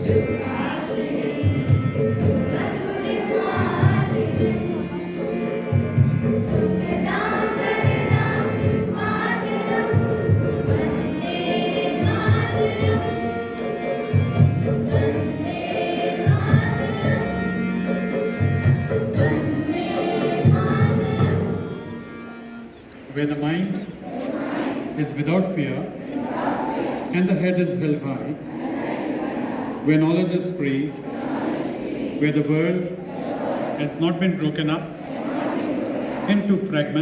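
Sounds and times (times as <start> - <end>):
group singing devotional song: 0.0 - 18.2, 19.0 - 22.0, 23.9 - 37.0
instrumental and percussion accompaniment: 0.0 - 22.8.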